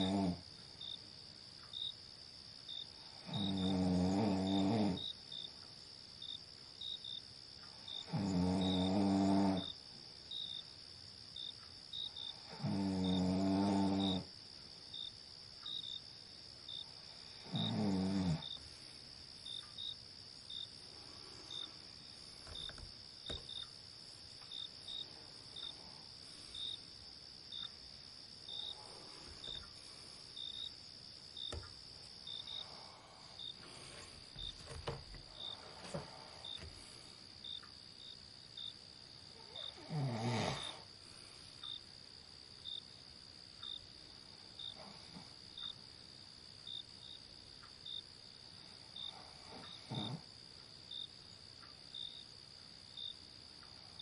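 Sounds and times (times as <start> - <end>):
person snoring: 0.0 - 0.5, 3.2 - 5.0, 8.0 - 9.8, 12.4 - 14.3, 17.3 - 18.5, 39.8 - 40.9
crickets chirping: 0.0 - 54.0
high insect hum: 0.0 - 54.0.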